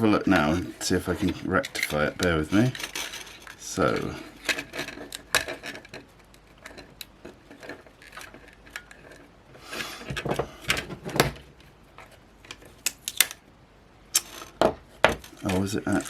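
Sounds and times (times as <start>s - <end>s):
plastic parts clicking and knocking: 0.0s - 9.3s, 10.0s - 13.4s, 14.2s - 16.0s.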